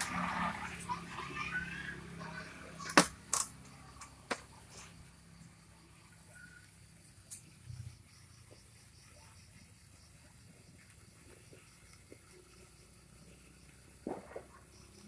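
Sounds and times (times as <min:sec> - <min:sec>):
fireworks popping: 0:00.0 - 0:01.4, 0:13.9 - 0:15.0.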